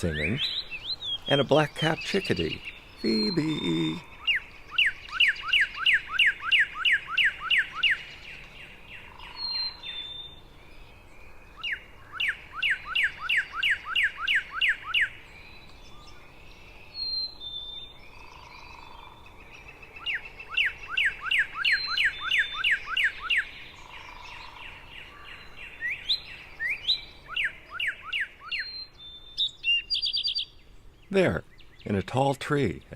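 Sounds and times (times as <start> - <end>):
bird singing downward whistles: 20.0 - 23.5.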